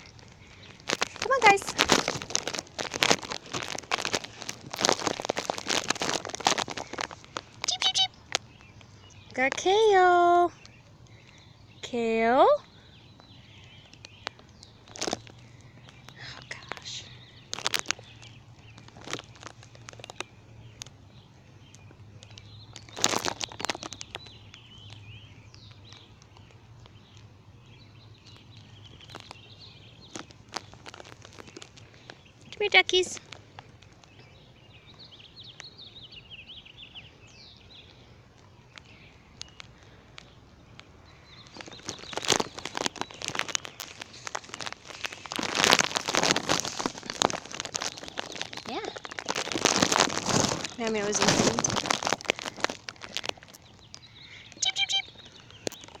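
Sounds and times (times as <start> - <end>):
clicks and rustles: 0.0 - 11.5, 13.1 - 35.9, 37.3 - 56.0
ducklings peeping: 0.0 - 12.0, 34.1 - 56.0.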